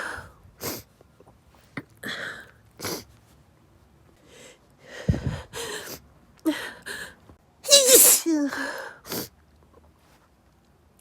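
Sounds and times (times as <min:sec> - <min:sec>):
person sneezing: 0:07.7 - 0:08.6.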